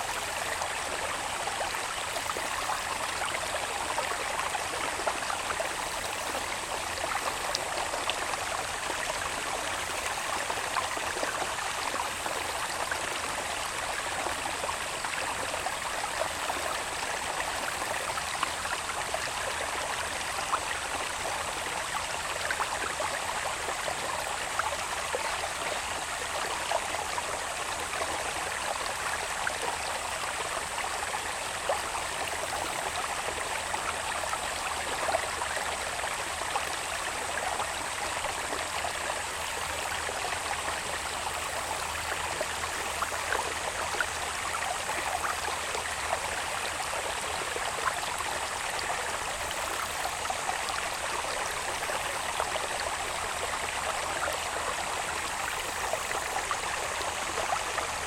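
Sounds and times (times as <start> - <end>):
water babbling in a channel: 0.0 - 58.0.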